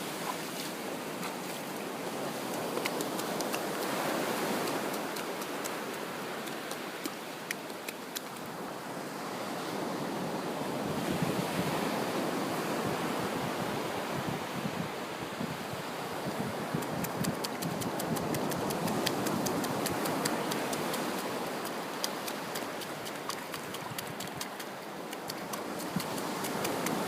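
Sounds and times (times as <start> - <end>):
faint ticks: 16.8 - 27.0.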